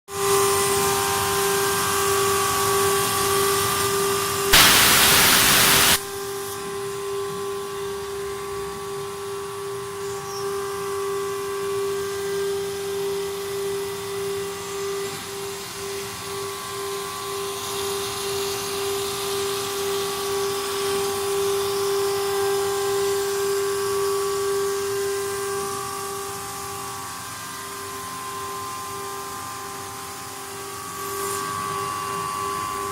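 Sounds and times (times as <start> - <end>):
loud hissing burst: 4.6 - 6.0.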